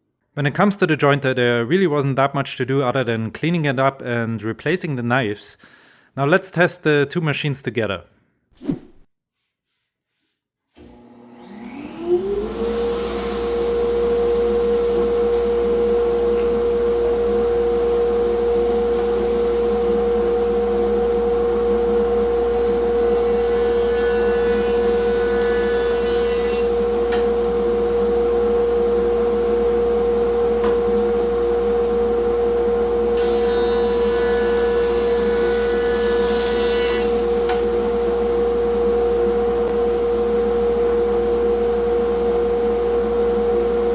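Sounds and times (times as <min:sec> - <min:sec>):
boards fed over jointer: 0:10.8 - 0:38.0
machine motors humming: 0:10.8 - 0:43.9.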